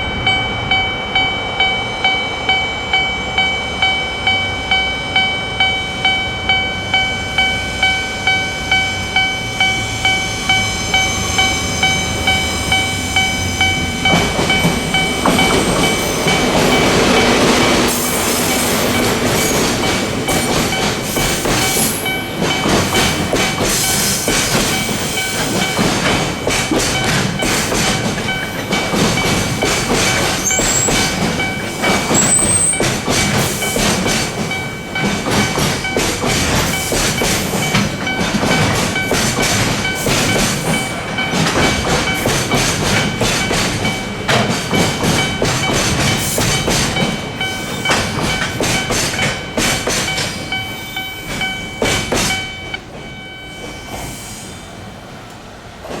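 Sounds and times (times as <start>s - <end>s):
crossing alarm bell ringing: 0.0s - 54.7s
high squeals: 5.8s - 32.9s
train wheels clattering over rail joints: 12.3s - 54.2s.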